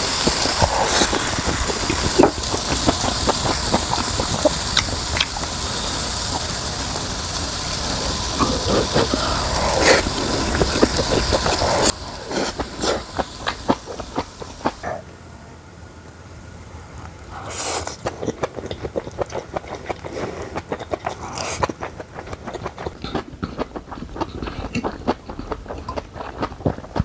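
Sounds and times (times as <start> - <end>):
meat sizzling in a pan: 0.0 - 14.8.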